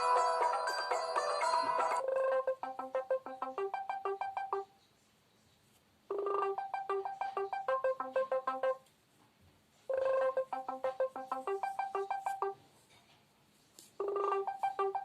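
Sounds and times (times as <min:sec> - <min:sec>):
phone ringtone melody: 0:00.0 - 0:04.7, 0:06.1 - 0:08.8, 0:09.9 - 0:12.6, 0:14.0 - 0:15.0.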